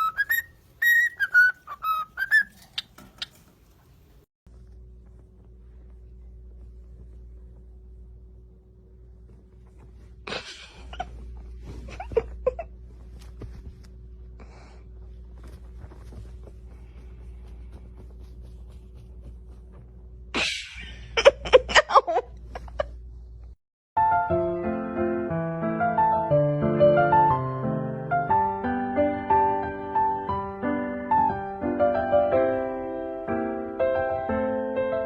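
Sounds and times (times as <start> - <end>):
faint low hum: 0.0 - 23.6.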